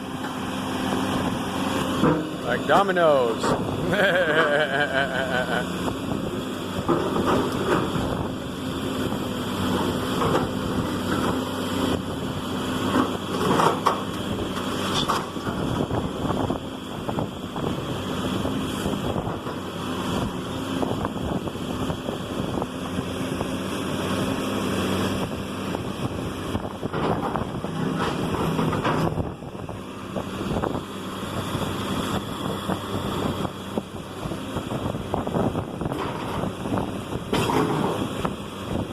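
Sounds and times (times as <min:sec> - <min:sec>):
diesel engine running: 0:00.0 - 0:38.9
wind buffeting microphone: 0:28.8 - 0:37.3.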